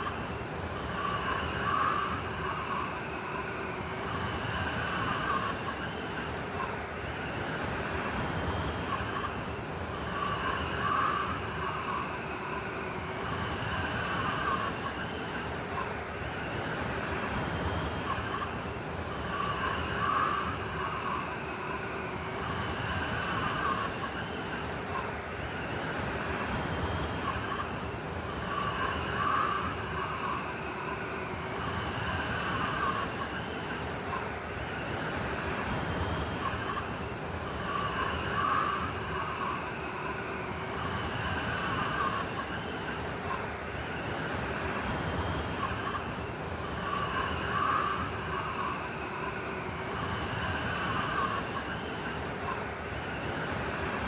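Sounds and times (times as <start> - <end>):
blizzard wind blowing: 0.0 - 54.0
wind whistling: 27.1 - 54.0.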